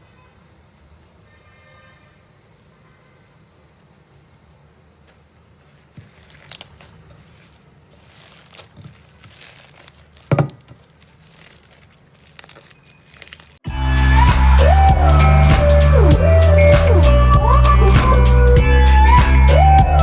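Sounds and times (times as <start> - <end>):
slime crinkling and crackling: 6.0 - 13.6.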